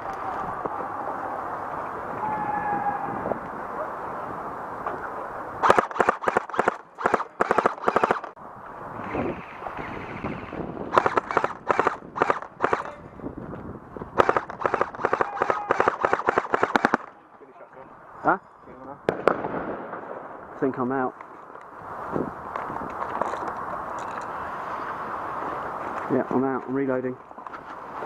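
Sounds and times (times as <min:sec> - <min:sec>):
airsoft rifle bursts: 0:05.6 - 0:08.3, 0:14.2 - 0:17.1.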